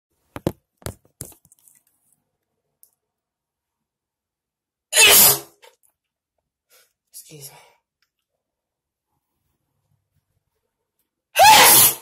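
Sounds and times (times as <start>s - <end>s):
loud sharp sneeze: 4.9s - 5.6s, 11.4s - 12.0s.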